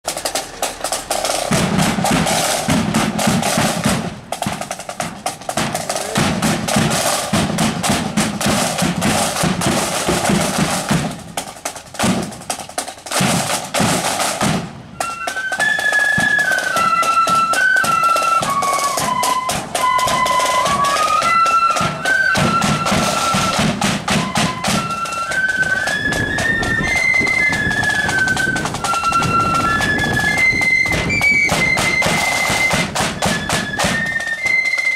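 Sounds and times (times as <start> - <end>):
rapid drumming: 0.0 - 34.9
high melody of held notes: 14.9 - 34.9.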